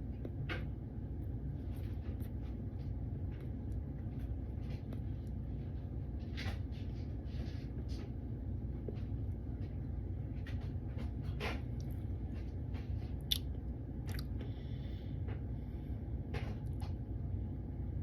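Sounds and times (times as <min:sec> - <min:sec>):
low background hum: 0:00.0 - 0:18.0.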